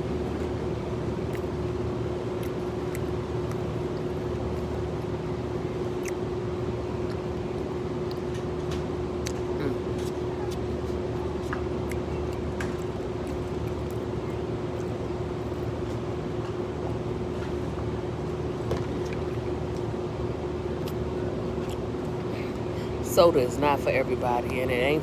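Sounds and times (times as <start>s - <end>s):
low hum and rumble: 0.0s - 25.0s
clicks and taps of eating: 8.0s - 15.0s.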